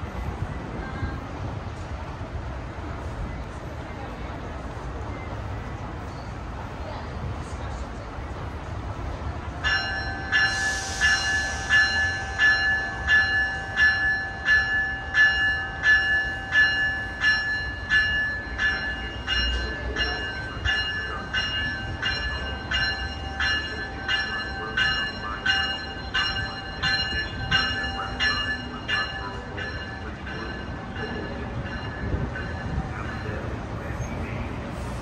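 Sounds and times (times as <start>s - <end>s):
locomotive bell ringing: 9.6s - 34.9s
air hiss: 10.5s - 12.2s.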